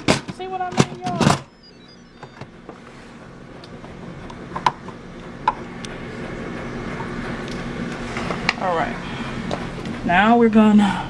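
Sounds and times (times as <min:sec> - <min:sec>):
steady low hum: 0:00.0 - 0:11.0
pressure cooker beeps: 0:01.1 - 0:02.5.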